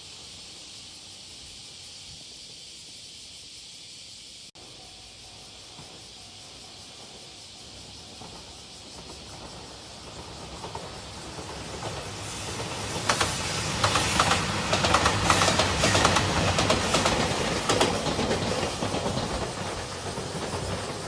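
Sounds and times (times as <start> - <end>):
diesel train passing: 0.0 - 21.0
wheels clicking over rail joints: 5.3 - 21.0.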